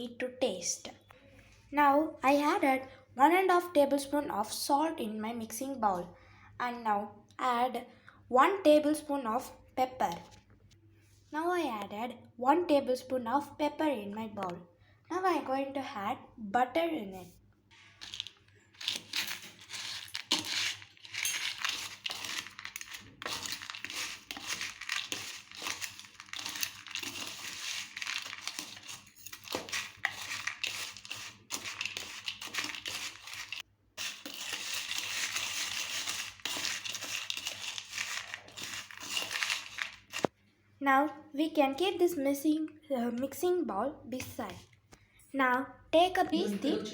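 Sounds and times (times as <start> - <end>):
popcorn kernels rattling in bowl: 18.0 - 40.3.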